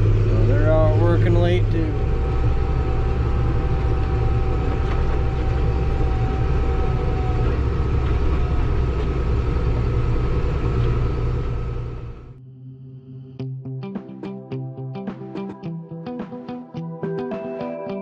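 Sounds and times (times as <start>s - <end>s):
vehicle engine and road noise: 0.0s - 12.4s.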